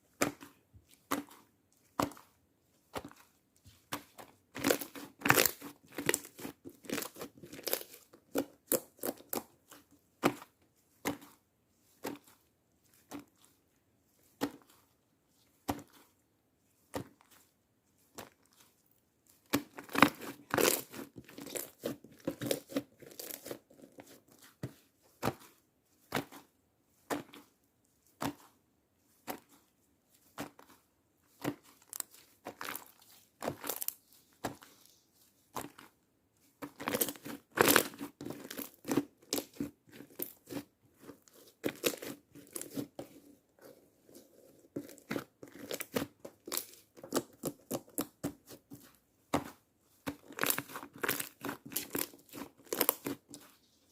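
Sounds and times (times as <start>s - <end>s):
slime crackling and popping: 4.6s - 9.5s, 19.5s - 23.6s, 50.1s - 53.3s.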